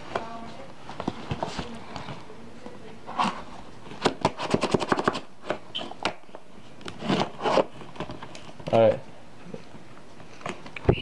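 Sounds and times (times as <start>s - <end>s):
packaging rustling and scraping: 3.1s - 8.8s.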